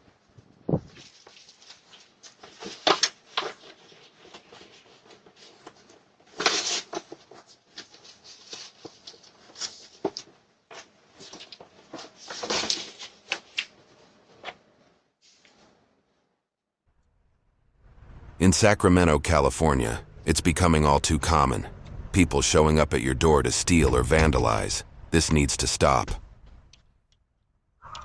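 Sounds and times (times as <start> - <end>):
handling rustling and clattering: 0.4 - 15.6.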